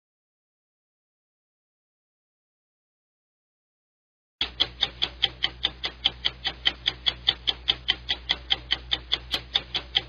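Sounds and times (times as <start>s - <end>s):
fast clock-like ticking: 4.4s - 10.0s.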